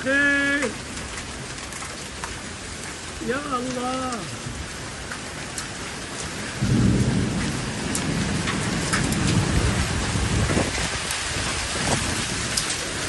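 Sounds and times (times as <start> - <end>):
heavy rain pouring: 0.0 - 13.0
thunder rumbling: 6.4 - 13.0.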